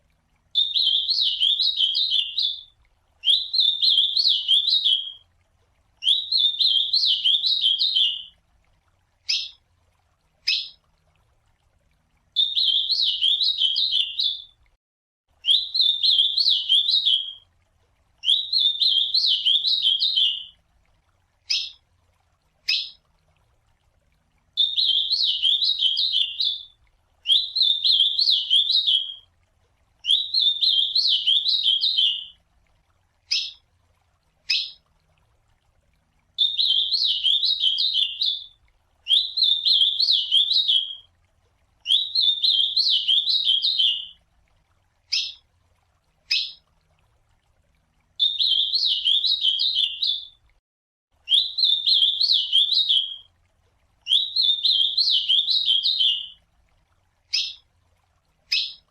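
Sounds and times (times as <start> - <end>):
bird warbling song: 0.6 - 5.2, 6.0 - 8.3, 9.3 - 9.6, 10.4 - 10.8, 12.4 - 14.6, 15.4 - 17.4, 18.2 - 20.6, 21.5 - 21.8, 22.6 - 23.1, 24.6 - 29.2, 30.0 - 32.4, 33.3 - 33.6, 34.5 - 34.9, 36.4 - 41.1, 41.8 - 44.2, 45.1 - 45.4, 46.3 - 46.6, 48.2 - 50.4, 51.3 - 53.2, 54.1 - 56.4, 57.3 - 57.7, 58.5 - 58.9.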